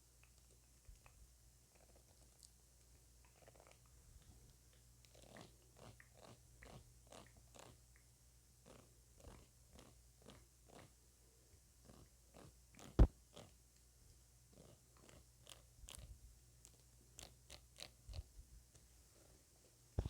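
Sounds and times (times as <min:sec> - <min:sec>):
wet mouth clicks: 0:05.1 - 0:08.1.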